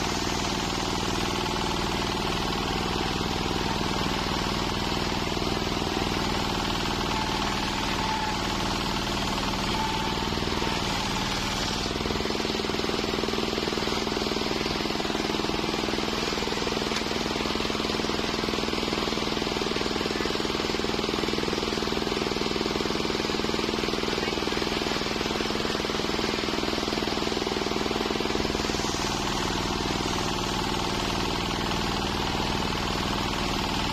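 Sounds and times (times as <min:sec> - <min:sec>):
circular sawmill running: 0:00.0 - 0:33.9.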